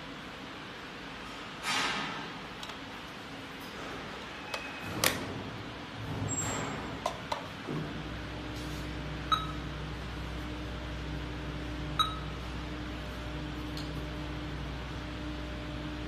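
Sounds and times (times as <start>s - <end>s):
low electrical hum: 0.0s - 16.0s
short electronic beep: 9.3s - 9.6s, 12.0s - 12.4s.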